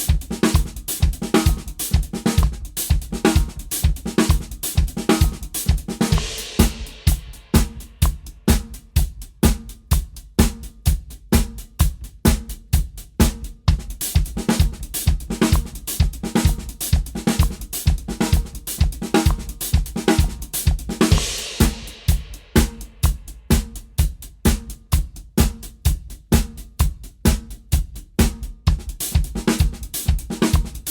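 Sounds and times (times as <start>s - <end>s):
drum kit groove: 0.0s - 30.9s.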